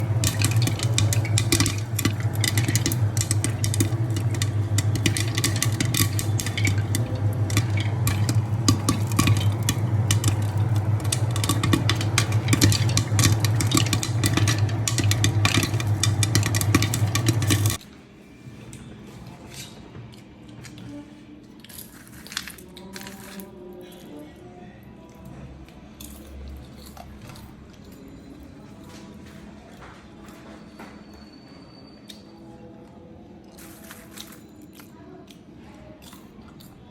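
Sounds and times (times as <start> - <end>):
popcorn popping: 0.0 - 17.8
low electric hum: 0.0 - 17.9.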